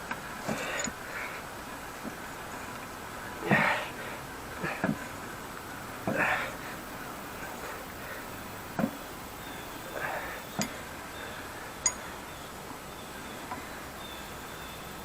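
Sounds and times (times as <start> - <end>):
vise metallic clinks and knocks: 0.5 - 1.0, 10.5 - 10.8, 11.8 - 12.1.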